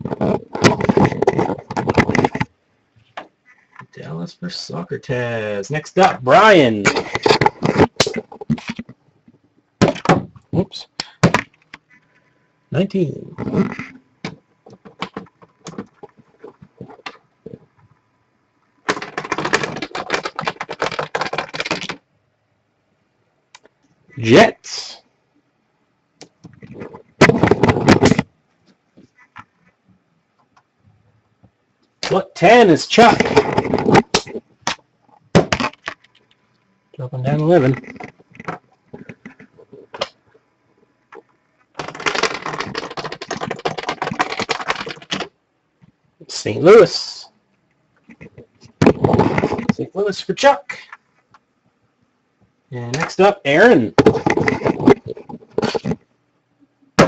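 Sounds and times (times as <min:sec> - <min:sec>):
keyboard typing: 0:13.4 - 0:17.6, 0:18.9 - 0:22.0, 0:41.1 - 0:45.3
rapid clatter of clicks: 0:18.9 - 0:22.0, 0:41.1 - 0:45.3.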